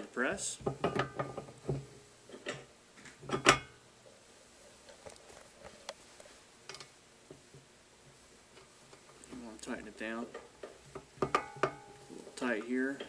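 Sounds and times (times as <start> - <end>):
metal clicks and knocks: 0.6 - 3.8, 10.3 - 12.0.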